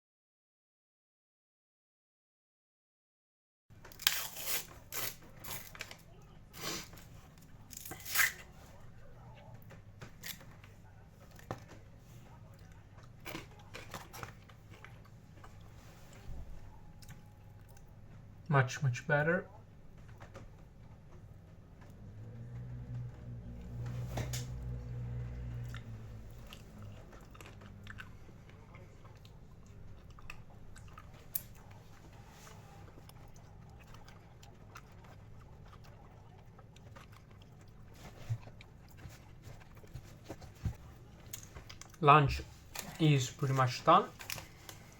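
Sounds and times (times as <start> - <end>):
low steady hum: 3.7 - 44.9
faint chewing: 4.0 - 18.1, 24.7 - 44.9
eating noises: 25.6 - 42.0
light clicks and crinkles: 42.6 - 44.9.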